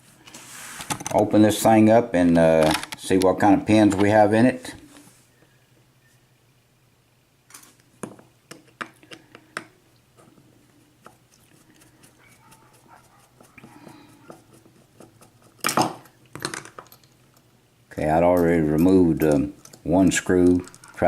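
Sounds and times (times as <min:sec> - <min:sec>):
lock and tools clicking and clattering: 0:15.6 - 0:17.5, 0:18.2 - 0:21.0.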